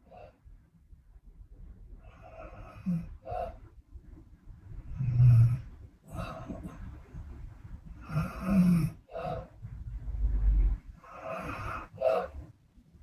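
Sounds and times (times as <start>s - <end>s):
woman snoring: 5.0s - 5.7s, 8.1s - 9.0s.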